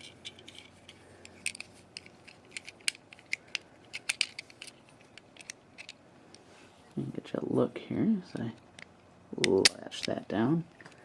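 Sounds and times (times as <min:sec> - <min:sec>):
padlock and keys clicking: 0:01.4 - 0:06.0.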